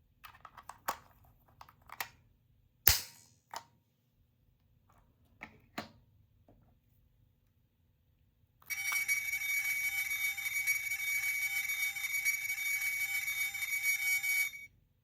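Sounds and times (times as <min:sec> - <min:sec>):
sharp crack: 0:02.9 - 0:03.4.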